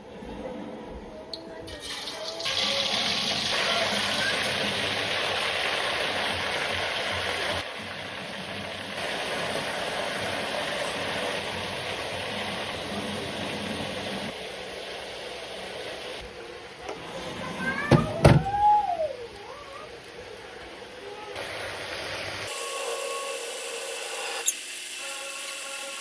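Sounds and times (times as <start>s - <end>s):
meat sizzling in hot oil: 1.8s - 16.2s.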